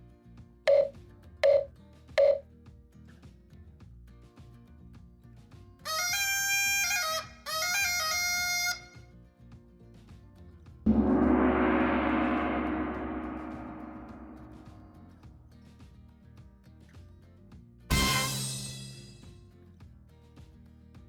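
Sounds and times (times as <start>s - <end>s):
gong-like crash ringing: 10.9s - 15.1s.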